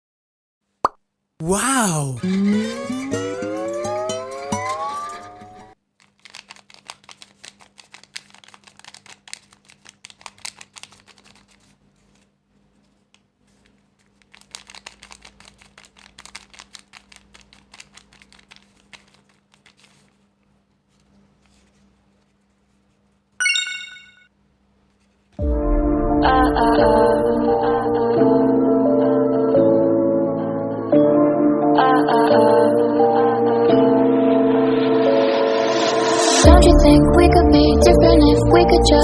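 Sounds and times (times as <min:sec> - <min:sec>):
paper crinkling: 0:06.0 - 0:20.2
loud high-pitched tone: 0:23.4 - 0:24.2.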